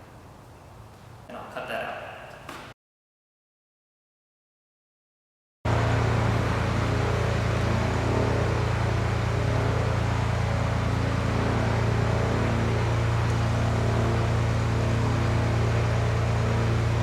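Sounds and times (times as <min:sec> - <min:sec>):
machine hum with hiss: 0:05.7 - 0:17.0.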